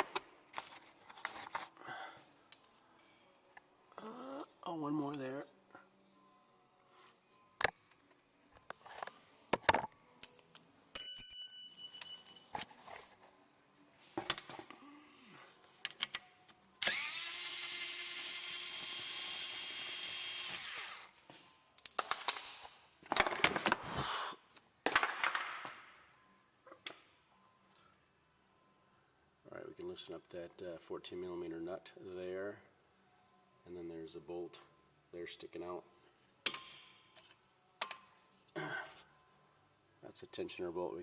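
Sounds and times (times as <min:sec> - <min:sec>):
hand tools and metal clinking: 0:11.0 - 0:13.2
cordless power tool spinning: 0:16.8 - 0:21.2.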